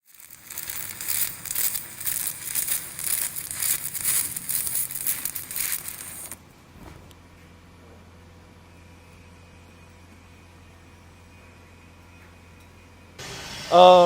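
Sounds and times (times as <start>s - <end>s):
welding arc crackling and sizzling: 0.0s - 6.4s.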